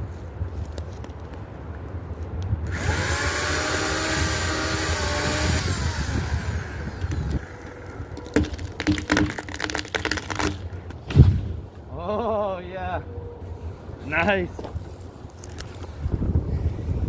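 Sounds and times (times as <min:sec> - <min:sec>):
chainsaw revving: 0:02.7 - 0:08.3
sharp cracks: 0:04.3 - 0:11.6.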